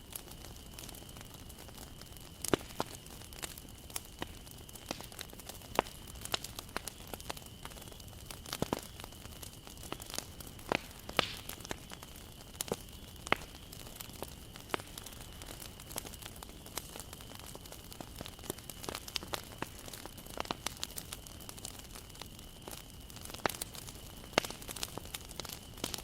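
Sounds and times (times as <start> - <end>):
bonfire crackling and popping: 0.0 - 26.0
fire hiss: 0.0 - 26.0
burning wood snaps: 0.1 - 26.0.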